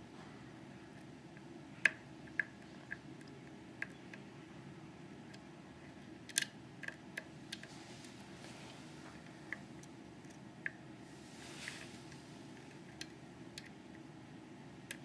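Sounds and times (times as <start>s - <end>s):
faint steady hum: 0.0s - 15.0s
lock picks clicking: 6.3s - 7.6s.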